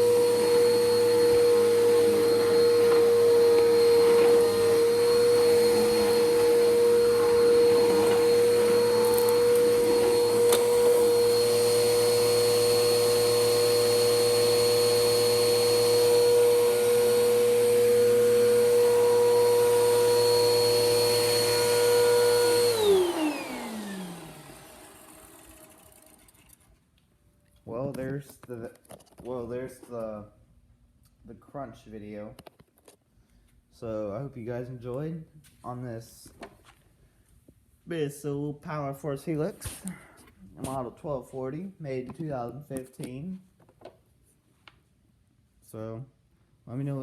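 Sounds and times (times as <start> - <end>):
vacuum cleaner motor whine: 0.0 - 26.6.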